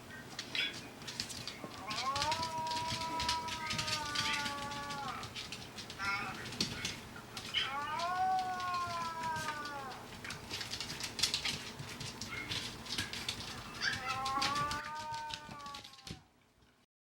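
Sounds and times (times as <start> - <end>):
dog howling: 1.6 - 5.4, 7.6 - 10.1, 13.6 - 16.2.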